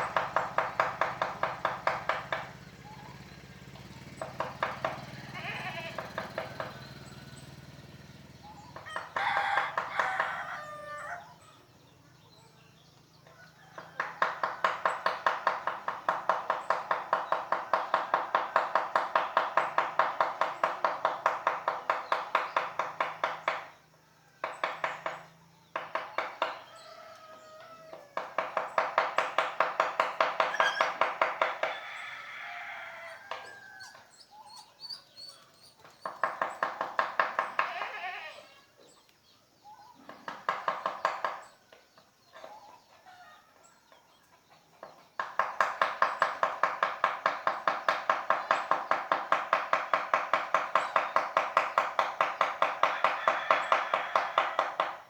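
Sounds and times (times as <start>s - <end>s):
mallet striking chisel on wood: 0.0s - 2.6s, 14.0s - 23.8s, 24.4s - 26.8s, 28.2s - 31.7s, 40.3s - 41.4s, 45.2s - 55.0s
rooster crowing: 8.5s - 11.5s, 13.2s - 15.7s, 26.3s - 28.6s, 30.4s - 34.8s, 42.8s - 44.0s, 52.4s - 55.0s.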